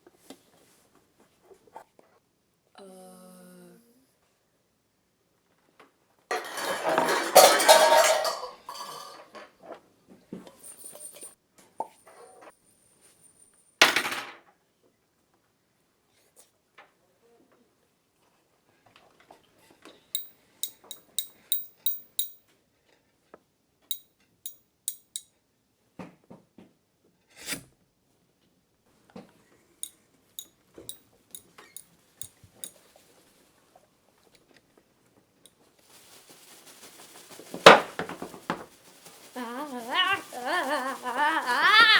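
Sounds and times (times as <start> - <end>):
hard objects clicking and knocking: 20.2 - 22.4, 23.9 - 25.3, 37.5 - 38.7
rustling hiss: 35.8 - 41.9.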